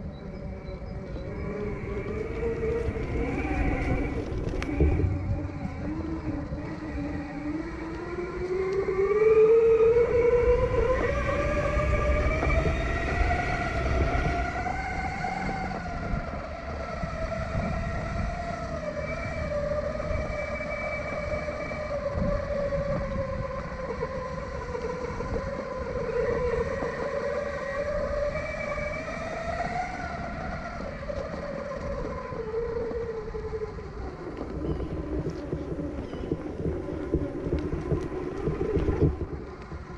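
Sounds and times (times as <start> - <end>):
rough low rumble: 0.0 - 8.6, 33.2 - 39.9
electric motor whine: 0.0 - 39.9.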